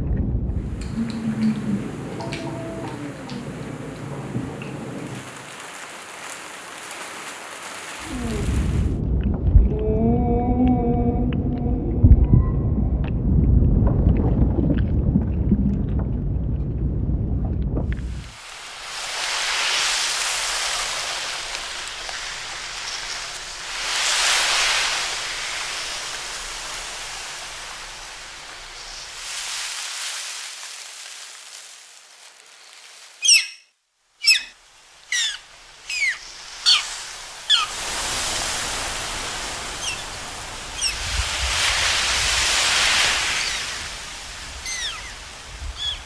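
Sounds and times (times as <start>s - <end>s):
short sharp chirps: 33.2s - 34.5s, 35.1s - 36.9s.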